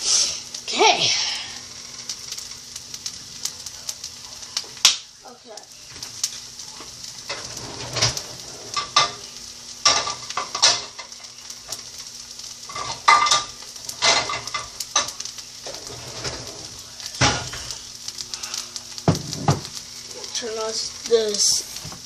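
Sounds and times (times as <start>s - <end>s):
food sizzling in a frying pan: 0.0s - 22.0s
utensil scraping a pan: 7.3s - 11.2s, 12.7s - 17.7s.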